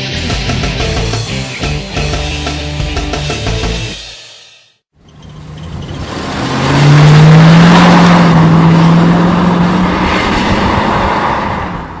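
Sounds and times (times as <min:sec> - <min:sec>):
road noise: 0:04.9 - 0:12.0.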